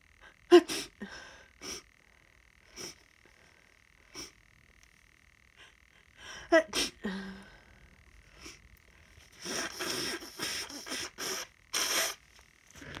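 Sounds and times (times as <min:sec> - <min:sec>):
person sniffing hard: 0:09.4 - 0:12.2.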